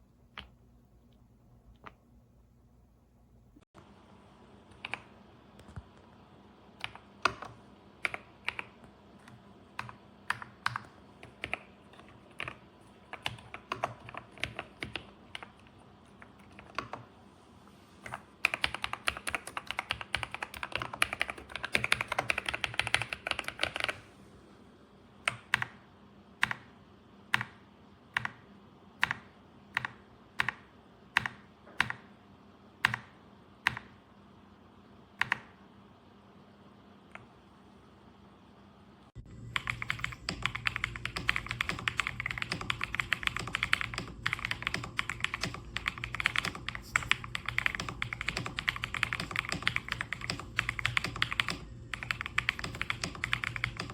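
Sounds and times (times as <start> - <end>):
mechanical keyboard typing: 6.8 - 17.1, 18.0 - 24.0, 29.0 - 32.1, 32.8 - 33.9, 39.5 - 53.9.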